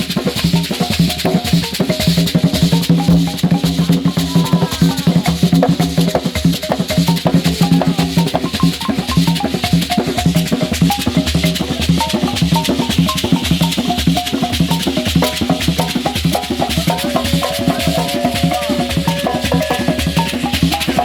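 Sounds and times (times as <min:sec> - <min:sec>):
drums and shakers rhythm: 0:00.0 - 0:21.0
pitched instrument quick runs: 0:15.9 - 0:21.0.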